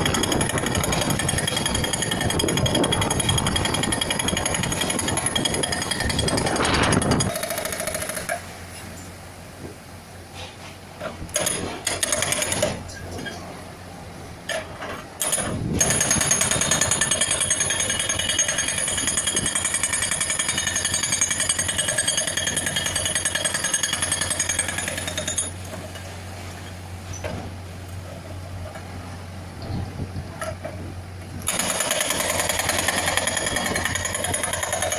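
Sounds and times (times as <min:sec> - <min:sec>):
hydraulic rock breaker hammering: 0:00.0 - 0:08.4, 0:11.2 - 0:13.1, 0:14.5 - 0:25.8, 0:31.4 - 0:34.9
diesel engine running: 0:00.0 - 0:34.9.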